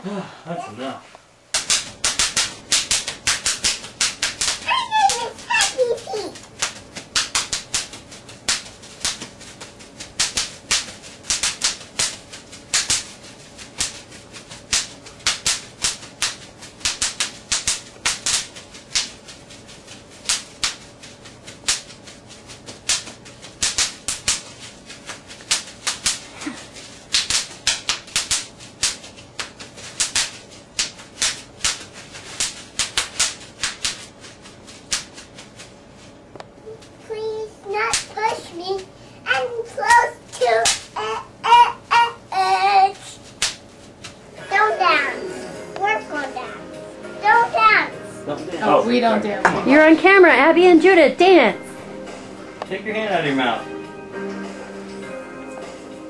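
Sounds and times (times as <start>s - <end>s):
bubble wrap popping: 1.5s - 35.8s.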